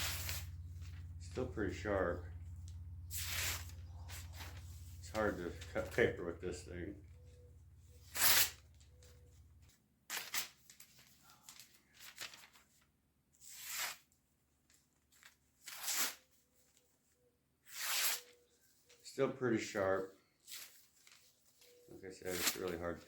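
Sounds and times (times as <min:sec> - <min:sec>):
paper being sliced with blade: 0:00.0 - 0:00.5, 0:03.1 - 0:04.6, 0:08.0 - 0:08.6, 0:13.4 - 0:14.1, 0:15.6 - 0:16.2, 0:17.7 - 0:18.4.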